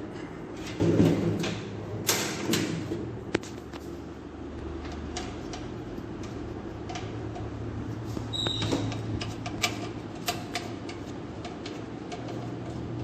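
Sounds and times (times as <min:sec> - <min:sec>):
steady low hum: 0:00.0 - 0:13.0
high squeak: 0:08.3 - 0:09.0.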